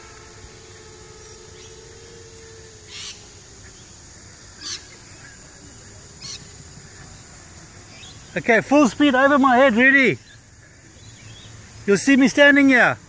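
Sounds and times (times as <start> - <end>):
quadcopter motors whining: 0.0 - 10.0
steady hiss: 0.0 - 13.0.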